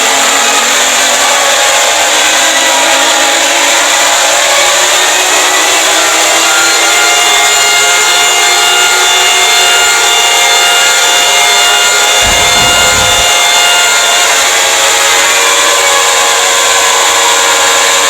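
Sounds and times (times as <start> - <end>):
layered alarm tones: 12.0 - 14.4
low rumble: 12.2 - 13.8
harsh distorted noise: 12.2 - 14.3.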